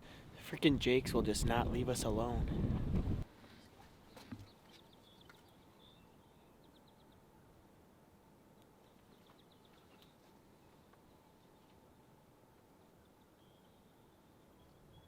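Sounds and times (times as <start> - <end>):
small birds chirping: 4.0 - 7.3, 8.6 - 11.8.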